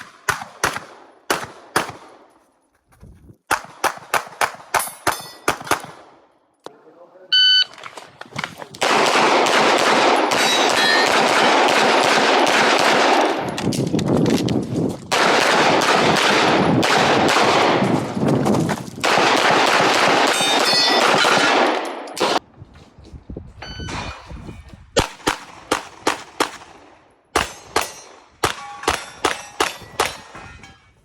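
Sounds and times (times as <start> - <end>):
rapid gunfire: 8.8 - 13.4, 15.1 - 17.9, 19.0 - 22.4.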